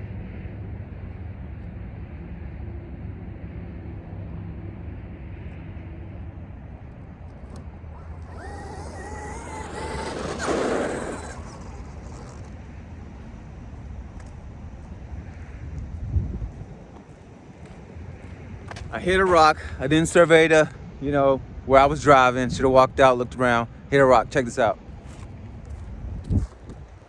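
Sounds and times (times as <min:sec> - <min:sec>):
low outdoor rumble: 0:00.0 - 0:27.0
electric motor whining: 0:07.3 - 0:12.6
toy truck rushing past: 0:07.4 - 0:12.9.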